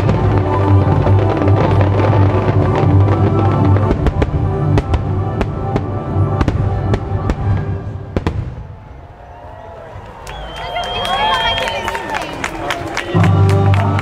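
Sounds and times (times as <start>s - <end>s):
orchestral music: 0.0s - 8.9s, 12.3s - 14.0s
fireworks bangs and crackles: 0.0s - 9.3s.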